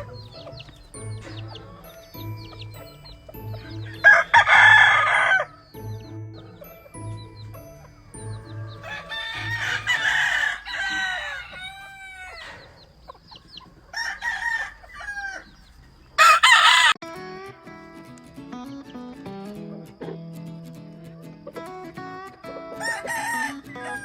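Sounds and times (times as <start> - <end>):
roosters crowing: 0.0 - 17.0, 22.6 - 24.0
faint background music: 0.0 - 24.0.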